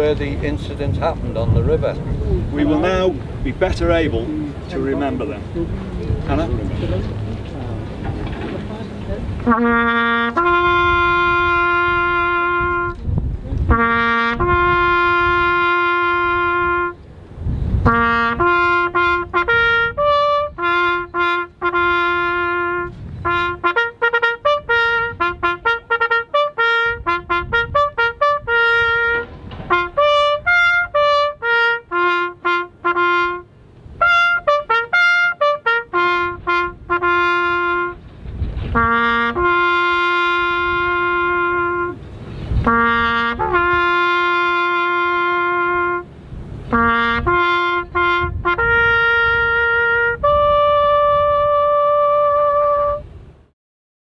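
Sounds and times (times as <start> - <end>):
solo trumpet bugle call: 9.4 - 17.1, 17.8 - 38.1, 38.7 - 42.0, 42.6 - 53.4.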